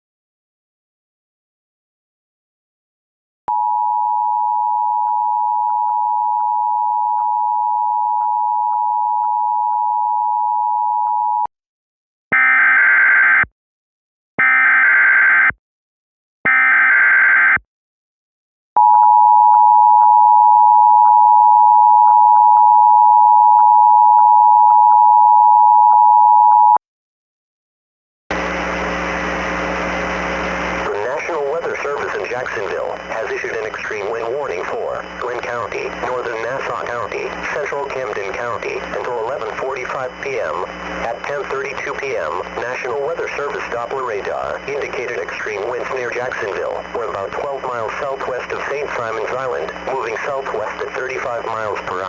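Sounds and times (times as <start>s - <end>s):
static hiss: 28.3s - 51.9s.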